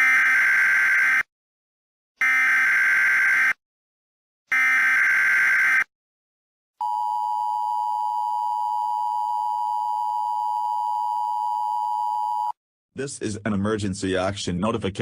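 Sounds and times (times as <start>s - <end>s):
long steady attention tone: 6.8s - 12.6s.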